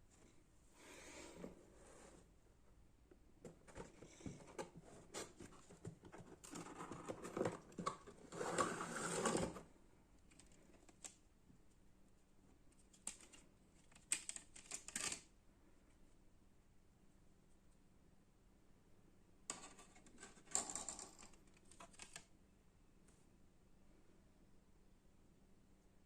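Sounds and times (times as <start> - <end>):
packaging scraping: 6.4 - 9.6.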